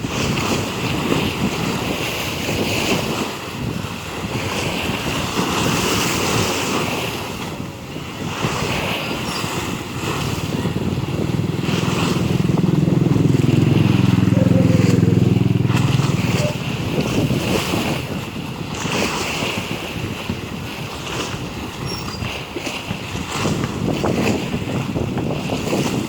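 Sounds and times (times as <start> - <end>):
sea waves washing: 0.0 - 26.0
wind buffeting microphone: 0.0 - 26.0
low engine drone: 9.2 - 18.1.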